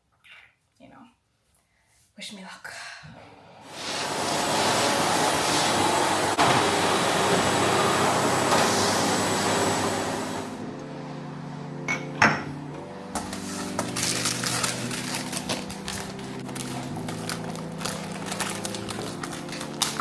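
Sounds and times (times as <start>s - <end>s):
soft music of sustained chords: 9.2s - 20.0s
objects clattering and clicking: 13.2s - 20.0s.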